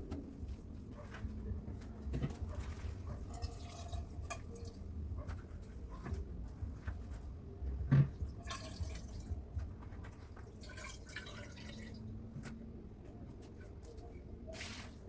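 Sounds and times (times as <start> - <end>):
wiping scrapes: 13.4 - 15.0.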